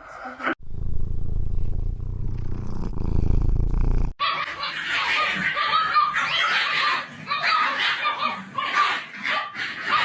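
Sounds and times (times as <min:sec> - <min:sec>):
pet animal rumbling: 0:00.6 - 0:05.6.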